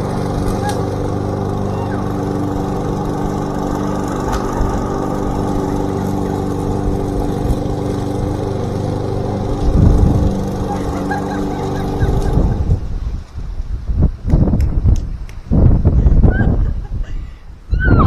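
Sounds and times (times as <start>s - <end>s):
lawn mower engine running: 0.0s - 13.2s.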